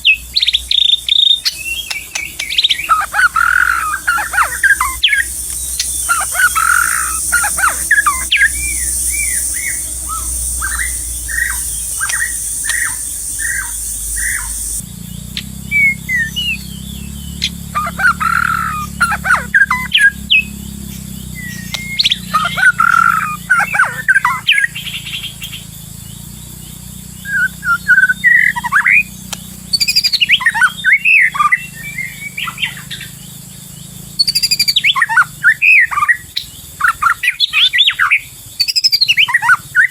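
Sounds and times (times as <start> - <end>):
bird squawky calls: 0.0 - 25.7, 27.1 - 33.3
bird whistled calls: 0.0 - 39.9
high insect drone: 0.0 - 39.9.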